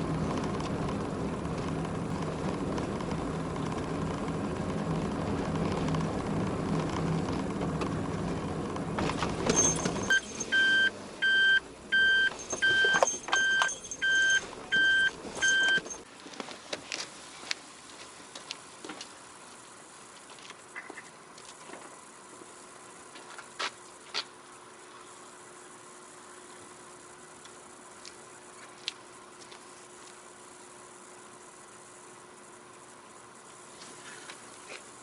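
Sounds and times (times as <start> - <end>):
car engine running: 0.0 - 16.1
short electronic beeps: 9.6 - 16.0.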